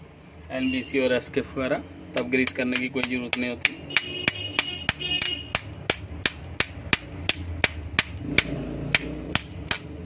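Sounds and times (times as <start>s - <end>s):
hammer tapping on metal: 2.2s - 10.0s.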